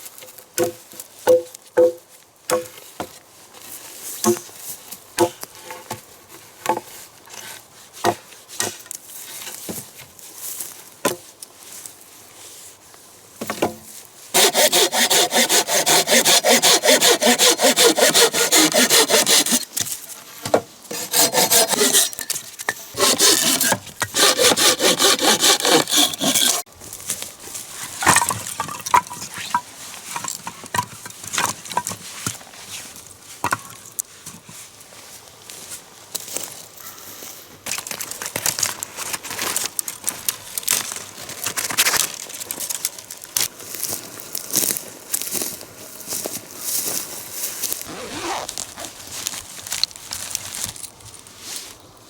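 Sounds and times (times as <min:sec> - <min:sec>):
hand saw cutting branches: 0:14.4 - 0:20.0, 0:20.9 - 0:26.7.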